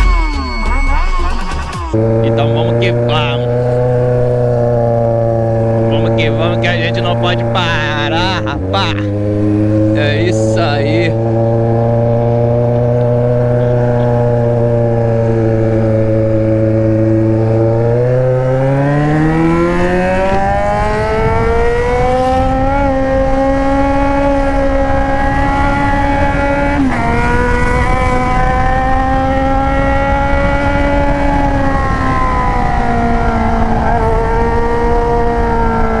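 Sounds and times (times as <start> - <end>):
motorcycle engine accelerating: 0.0 - 36.0
wind rush: 14.2 - 36.0.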